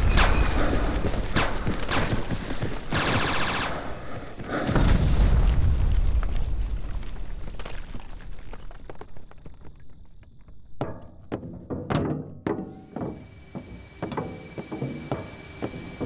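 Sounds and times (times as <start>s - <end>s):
gunfire cracks: 0.0s - 8.7s
deep booming rumbles: 3.8s - 8.8s.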